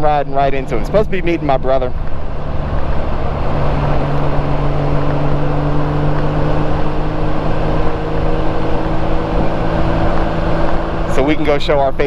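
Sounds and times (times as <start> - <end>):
motorcycle engine hum: 0.0 - 12.0
wind and road noise: 0.0 - 12.0.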